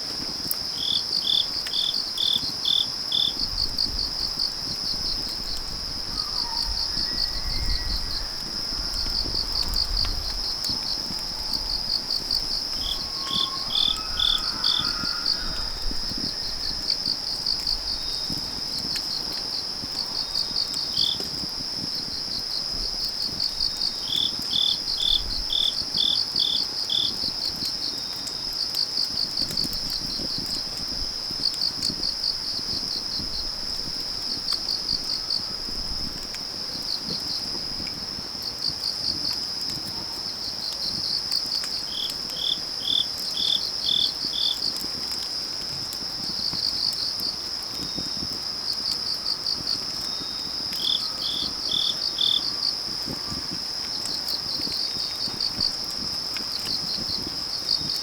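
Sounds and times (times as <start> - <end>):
crickets trilling: 0.0 - 58.0.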